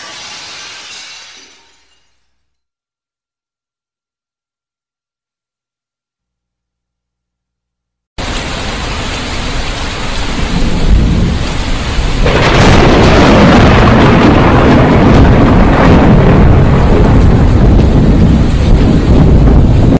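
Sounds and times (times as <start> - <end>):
heavy rain: 8.2 - 19.9
thunder rumbling: 8.2 - 19.9.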